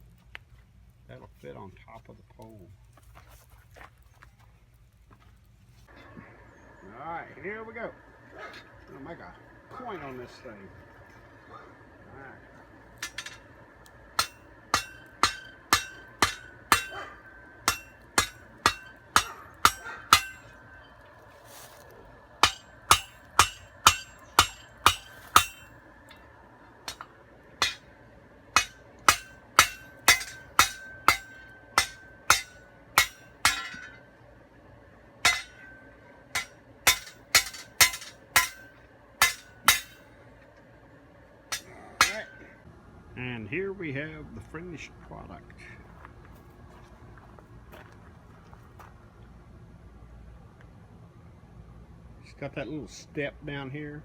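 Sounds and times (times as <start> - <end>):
hammer striking steel on anvil: 13.0 - 13.4, 14.2 - 20.9, 22.4 - 26.2, 26.9 - 27.9, 28.6 - 34.1, 35.2 - 40.0, 41.5 - 42.6.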